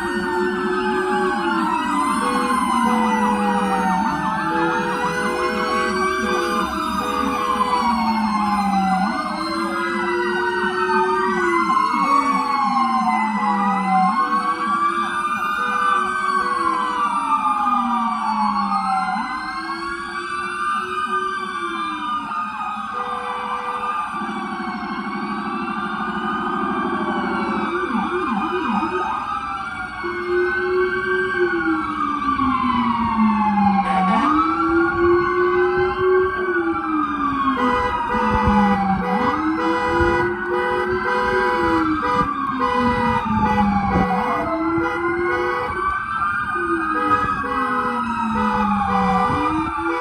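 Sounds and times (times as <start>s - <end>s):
deep siren sliding down and up: 0.0s - 50.0s
emergency sirens wailing: 0.0s - 50.0s
horn blasts: 4.4s - 8.1s, 33.8s - 34.5s, 37.6s - 45.9s, 46.9s - 50.0s.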